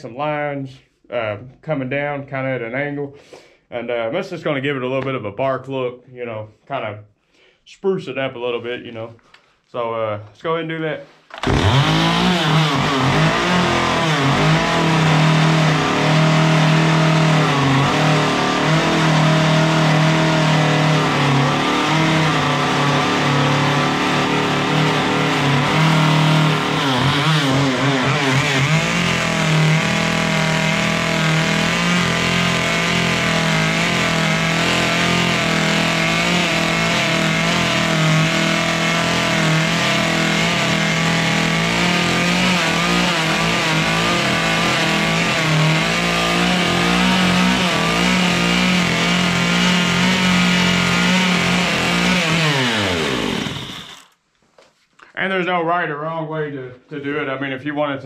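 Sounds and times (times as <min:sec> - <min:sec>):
chainsaw cutting wood: 0:11.3 - 0:54.2.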